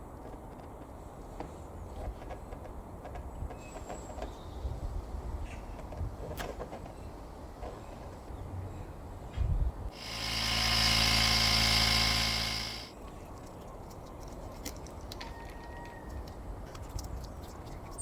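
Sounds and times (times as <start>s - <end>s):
small electric motor running: 9.9s - 12.9s.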